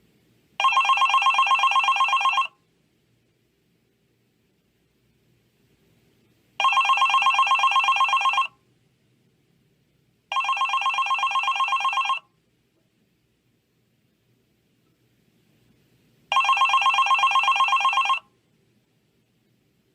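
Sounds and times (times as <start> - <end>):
telephone bell ringing: 0.6 - 2.6, 6.6 - 8.6, 10.3 - 12.3, 16.3 - 18.3.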